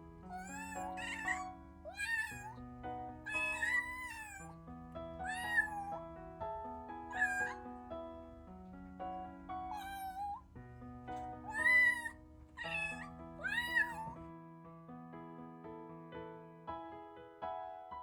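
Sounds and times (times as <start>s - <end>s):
soft piano-like background music: 0.0s - 18.0s
kitten meowing loudly: 0.3s - 2.6s, 3.2s - 4.6s, 5.2s - 6.0s, 7.1s - 7.6s, 9.7s - 10.4s, 11.4s - 14.2s.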